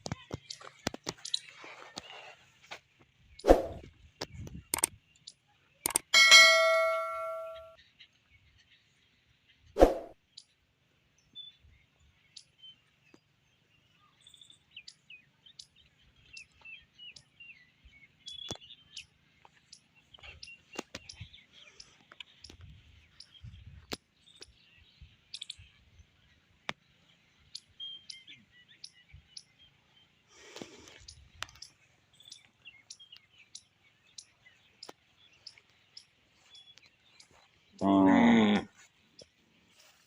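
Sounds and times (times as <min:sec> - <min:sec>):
faint bird chirps: 0:03.2 - 0:40.0
sharp clicks: 0:03.5 - 0:05.0, 0:05.8 - 0:06.8.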